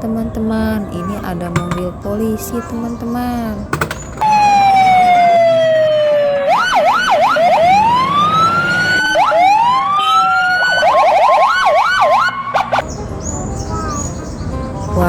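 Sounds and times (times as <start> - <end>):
electronic police siren: 4.3 - 12.8.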